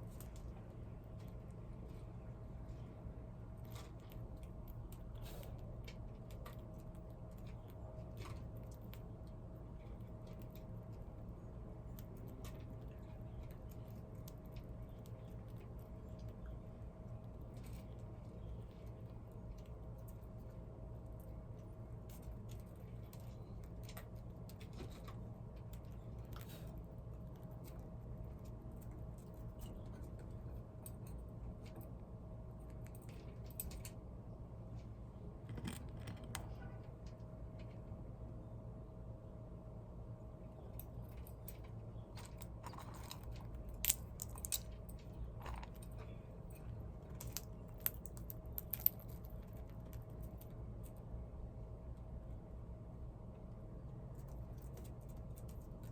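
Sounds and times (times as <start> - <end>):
steady low hum: 0.0 - 55.9
crunching and chewing: 40.8 - 50.5.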